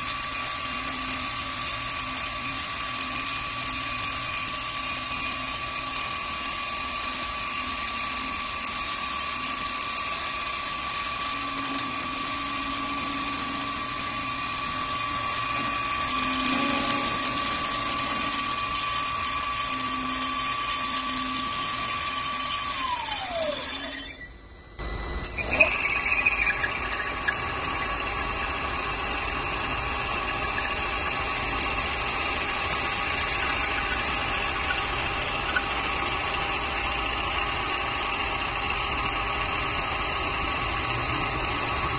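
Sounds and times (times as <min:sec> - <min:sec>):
spindle motor whine: 0:00.0 - 0:41.9.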